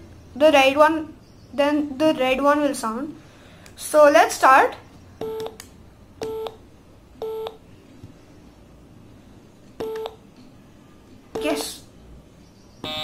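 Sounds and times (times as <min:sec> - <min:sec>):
electronic game beeping: 0:11.4 - 0:11.8.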